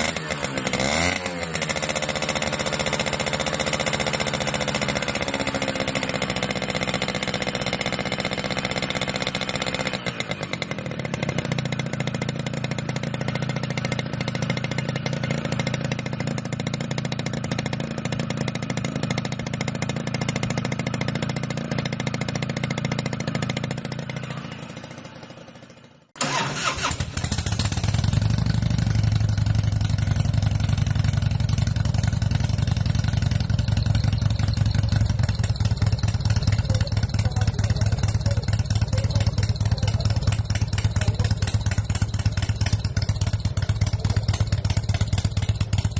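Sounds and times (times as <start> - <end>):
deeper motorcycle engine: 0.0 - 45.9
motorcycle engine running: 0.0 - 45.9.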